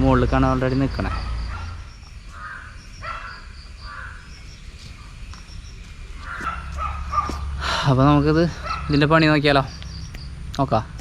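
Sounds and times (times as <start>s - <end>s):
insects chirping: 0.0s - 11.0s
bird short rough calls: 6.2s - 7.5s.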